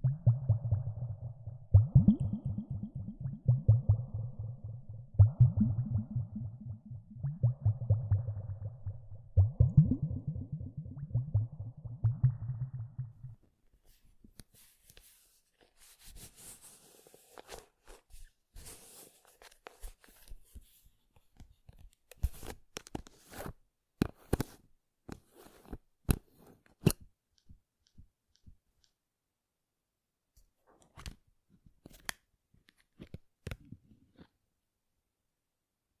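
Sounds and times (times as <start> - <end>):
soft crinkling and rustling: 13.7 - 27.6.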